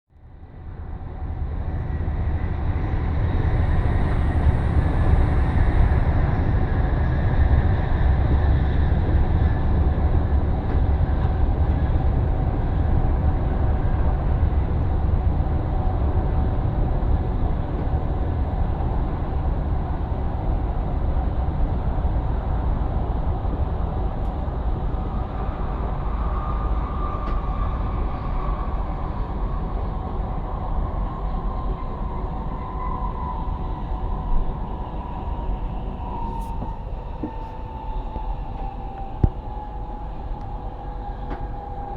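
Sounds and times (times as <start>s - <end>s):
traction drive whine: 15.8s - 41.9s.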